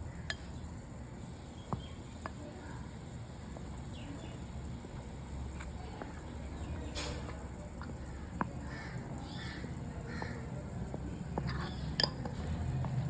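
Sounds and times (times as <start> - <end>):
low steady hum: 0.0 - 8.2.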